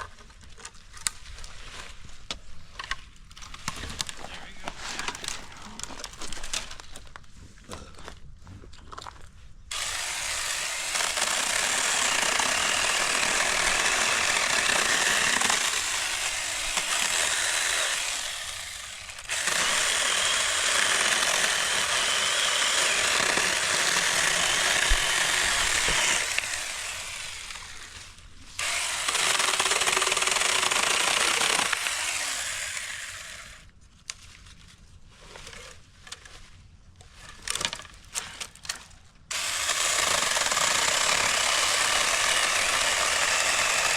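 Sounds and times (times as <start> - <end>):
chainsaw cutting wood: 9.7 - 33.6, 39.3 - 43.9.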